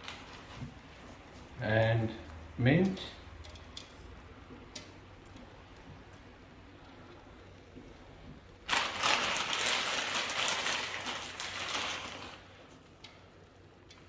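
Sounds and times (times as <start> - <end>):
rustling and crinkling handling noise: 0.0 - 14.0.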